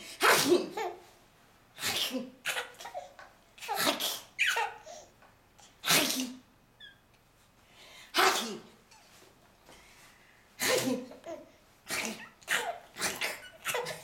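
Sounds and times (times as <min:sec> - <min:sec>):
loud sneezes: 0:00.0 - 0:00.8, 0:01.8 - 0:05.0, 0:05.8 - 0:06.5, 0:08.1 - 0:08.8, 0:10.6 - 0:11.1, 0:11.8 - 0:14.0
baby laughing: 0:02.4 - 0:05.0, 0:10.8 - 0:14.0.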